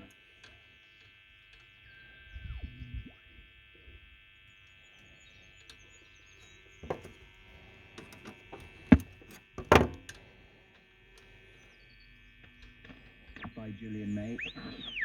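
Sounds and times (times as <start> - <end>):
radio hum and whistling tones: 0.0 - 9.0, 11.0 - 15.0
radio crackles and clicks: 12.4 - 15.0.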